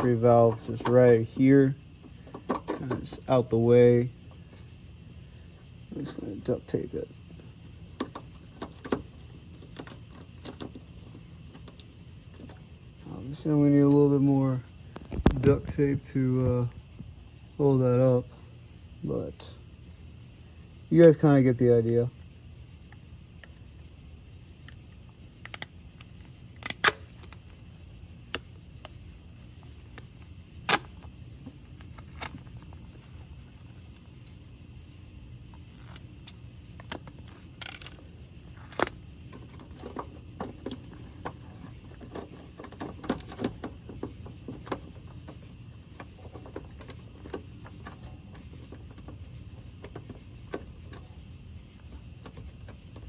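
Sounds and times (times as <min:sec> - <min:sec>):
crickets chirring: 0:00.0 - 0:53.0
hands handling duct tape: 0:24.7 - 0:29.0, 0:35.8 - 0:51.0.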